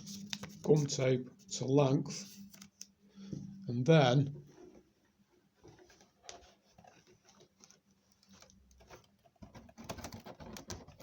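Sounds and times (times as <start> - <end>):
paper tape rustling: 0.0 - 1.0, 5.6 - 11.0.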